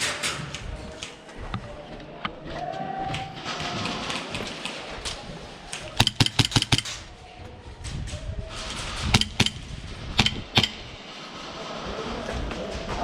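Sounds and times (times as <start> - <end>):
outdoor background noise: 0.0 - 13.0
airsoft gunshots snapping: 5.8 - 7.0, 9.1 - 10.8.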